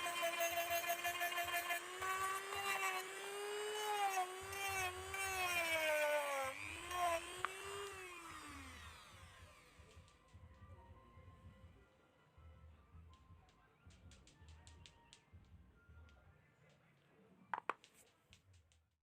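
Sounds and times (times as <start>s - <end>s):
electric drill whining: 0.0s - 10.2s.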